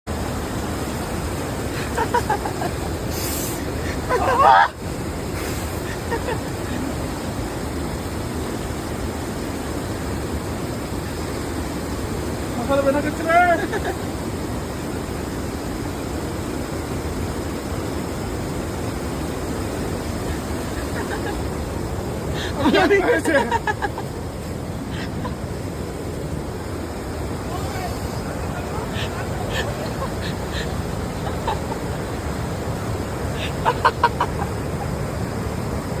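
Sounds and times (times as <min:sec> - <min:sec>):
steady rushing noise: 0:00.1 - 0:36.0
hen-like clucking calls: 0:28.0 - 0:32.1, 0:33.3 - 0:34.6.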